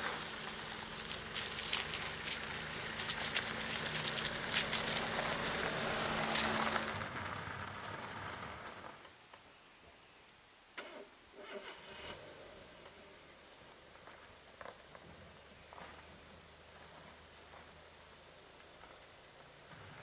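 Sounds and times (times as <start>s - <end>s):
car engine running: 0.0s - 9.0s
tyres crackling on dirt: 0.0s - 9.4s, 13.5s - 20.0s.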